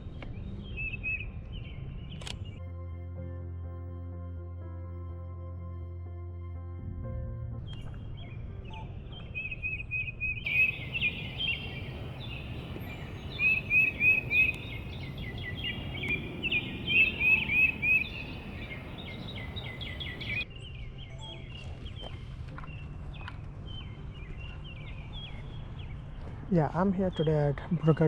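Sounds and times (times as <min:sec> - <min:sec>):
background bird calls: 0:10.5 - 0:20.4
songbird whistled notes: 0:10.5 - 0:20.4.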